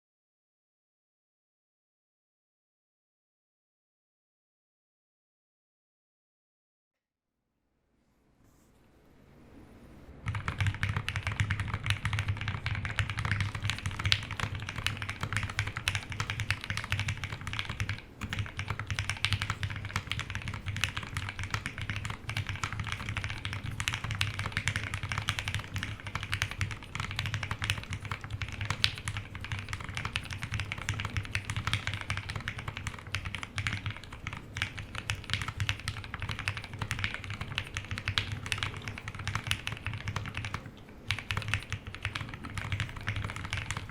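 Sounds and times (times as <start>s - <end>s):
typing on mechanical keyboard: 10.2s - 43.9s.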